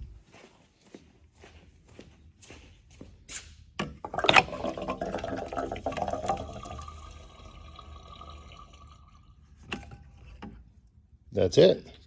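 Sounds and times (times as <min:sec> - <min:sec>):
liquid glugging into filler neck: 0:04.0 - 0:10.2.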